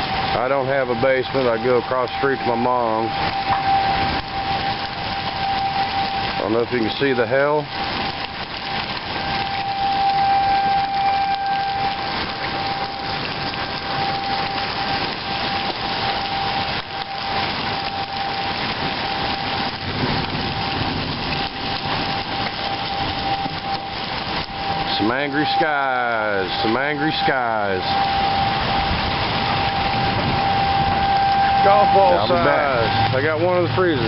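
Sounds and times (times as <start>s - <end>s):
hail and heavy rain pelting: 0.0s - 34.0s
tornado siren steady tone: 0.0s - 34.0s.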